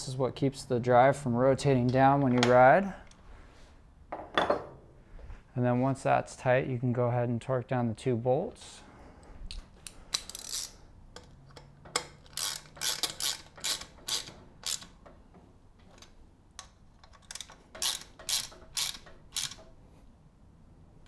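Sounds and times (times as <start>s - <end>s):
ratchet wrench clicking: 10.1s - 15.0s, 16.0s - 19.8s.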